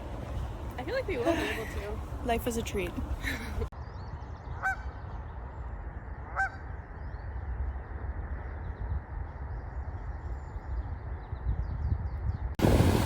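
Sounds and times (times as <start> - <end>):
low wind rumble: 0.0 - 13.0
waterfowl honk: 4.6 - 4.8, 6.3 - 6.6.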